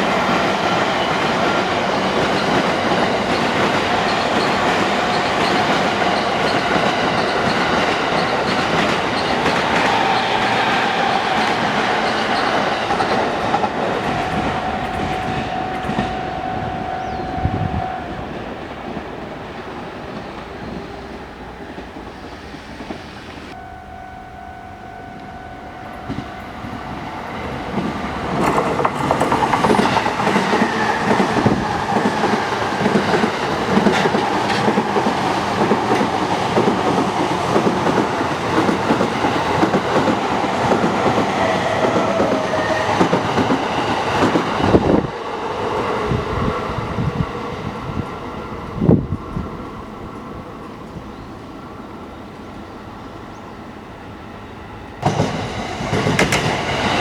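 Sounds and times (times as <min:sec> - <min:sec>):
wheels clattering over rails: 0:00.0 - 0:17.7
electric train passing: 0:00.0 - 0:57.0.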